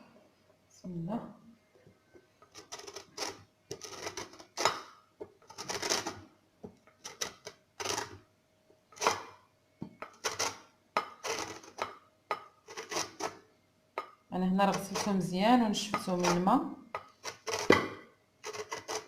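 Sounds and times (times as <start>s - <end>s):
grater scraping lemon rind: 2.5s - 4.8s, 5.5s - 6.2s, 10.1s - 10.6s, 11.2s - 11.9s, 12.6s - 13.4s, 14.7s - 15.3s, 16.0s - 17.8s, 18.4s - 19.0s.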